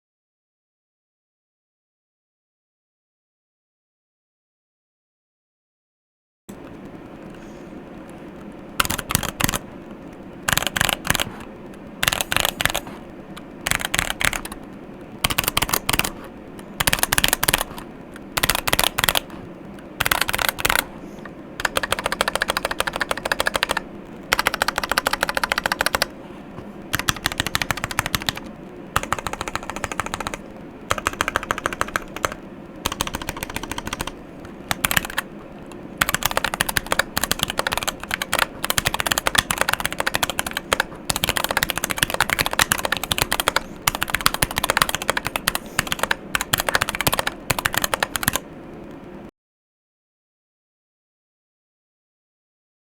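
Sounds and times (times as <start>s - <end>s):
mechanical keyboard typing: 8.0s - 26.2s, 26.8s - 48.5s.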